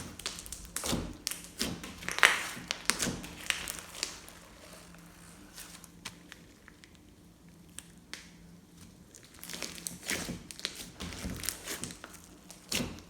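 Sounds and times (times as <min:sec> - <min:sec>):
slime crackling and popping: 0:00.0 - 0:13.0.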